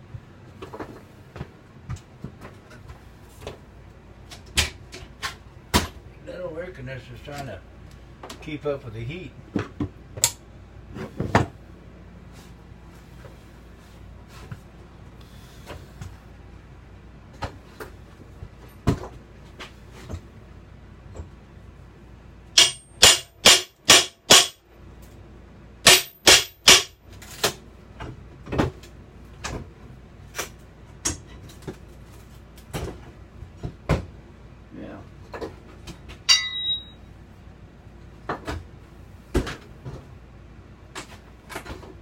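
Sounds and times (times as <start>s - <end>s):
air conditioner humming: 0.0s - 42.0s
loud sharp knocks: 22.6s - 24.6s, 25.8s - 27.0s.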